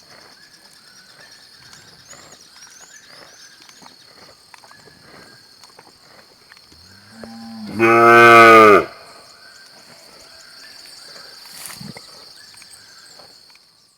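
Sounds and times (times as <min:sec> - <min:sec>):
cow mooing: 0:07.0 - 0:09.2.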